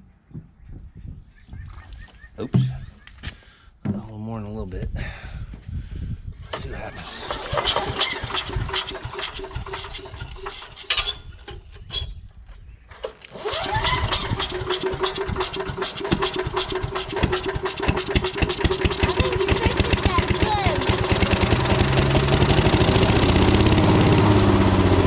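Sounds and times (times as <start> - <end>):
small gasoline engine running: 7.0 - 11.3, 13.3 - 25.0.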